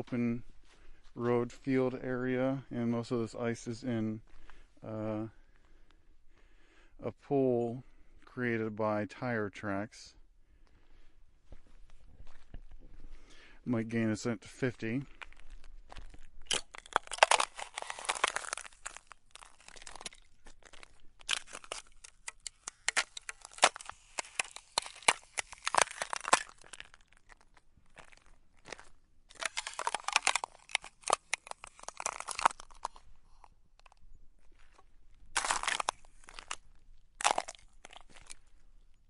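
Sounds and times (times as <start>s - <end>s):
thin ice cracking underfoot: 14.8s - 39.0s.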